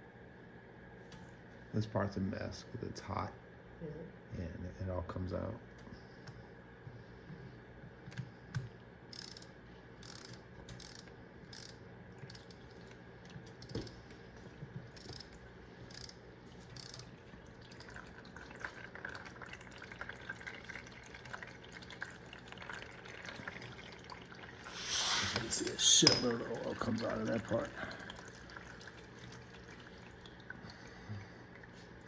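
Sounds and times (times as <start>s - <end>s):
oil dripping and trickling into pan: 16.6s - 24.9s, 26.6s - 32.0s.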